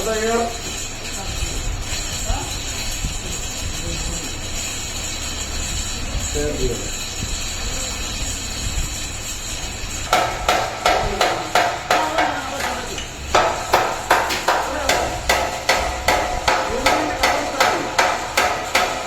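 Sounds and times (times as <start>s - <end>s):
hammer striking steel: 10.1s - 19.0s.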